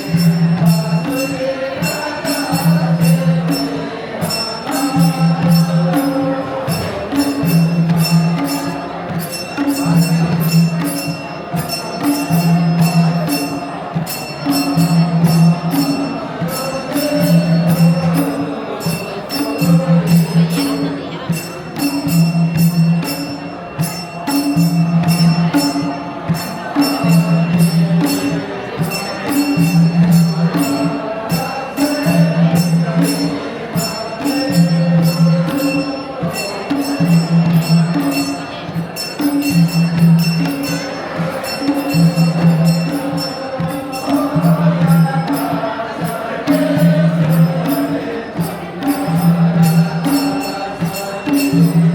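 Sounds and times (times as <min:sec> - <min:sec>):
rapid metallic jingling: 0:00.0 - 0:51.9.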